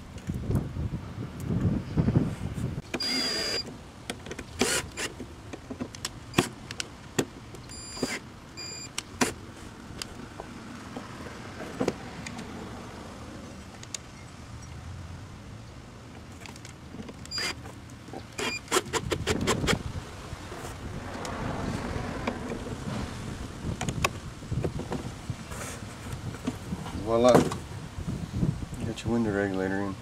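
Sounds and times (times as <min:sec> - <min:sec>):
electric power driver whining: 0:02.9 - 0:03.7.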